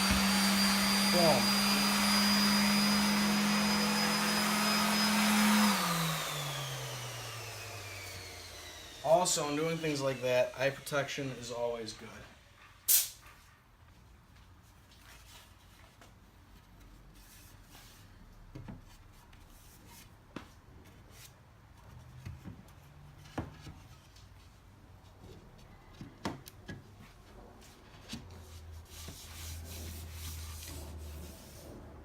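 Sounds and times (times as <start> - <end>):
wood rubbing: 0.0 - 2.5.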